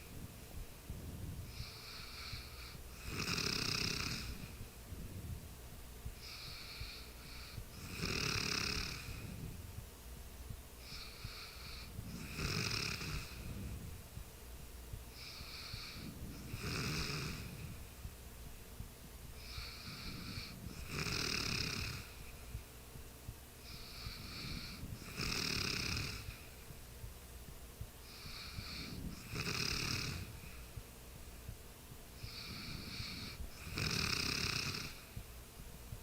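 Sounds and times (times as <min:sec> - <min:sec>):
person snoring: 0:01.5 - 0:04.6, 0:06.2 - 0:09.5, 0:10.8 - 0:13.8, 0:15.2 - 0:17.8, 0:19.4 - 0:22.2, 0:23.6 - 0:26.4, 0:28.1 - 0:30.5, 0:32.2 - 0:35.1.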